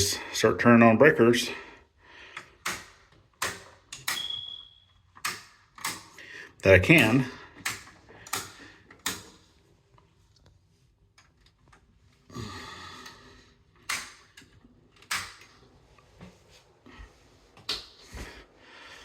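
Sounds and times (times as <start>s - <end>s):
circuit breakers snapping on: 2.4s - 6.2s, 6.9s - 9.4s, 13.8s - 15.6s.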